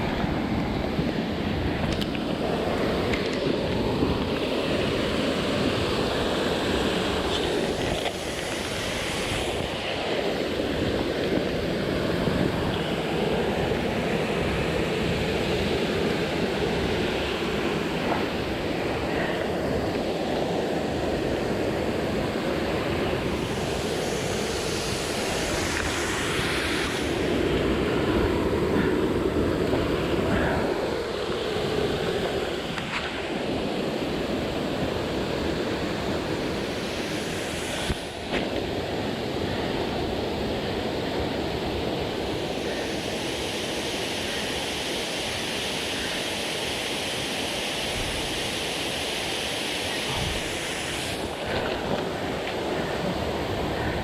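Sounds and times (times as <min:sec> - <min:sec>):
stream water rushing: 0:00.0 - 0:54.0.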